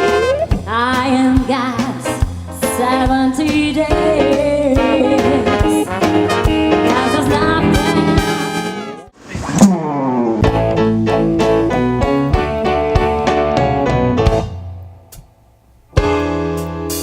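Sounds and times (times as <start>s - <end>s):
upbeat dance music with brass: 5.5s - 9.1s.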